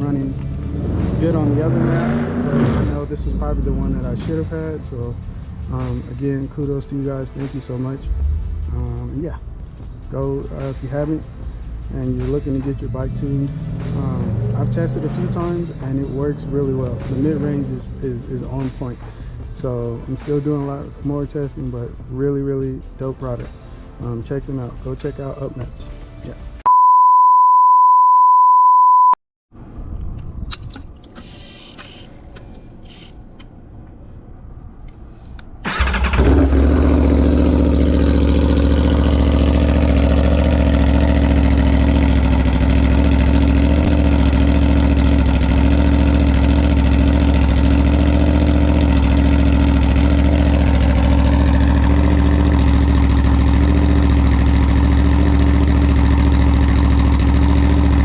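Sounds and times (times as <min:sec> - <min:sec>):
low rumble: 0:00.0 - 0:20.2
motorcycle engine starting and idling: 0:00.0 - 0:21.7, 0:35.6 - 0:58.0.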